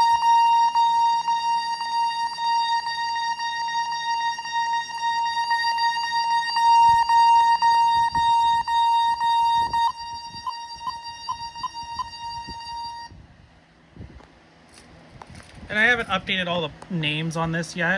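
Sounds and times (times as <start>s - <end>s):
fire alarm tone: 0.0s - 13.1s.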